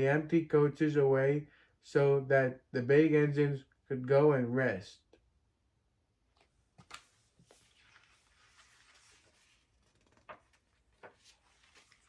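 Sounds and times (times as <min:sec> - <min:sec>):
page turning rustle: 0:06.3 - 0:12.0.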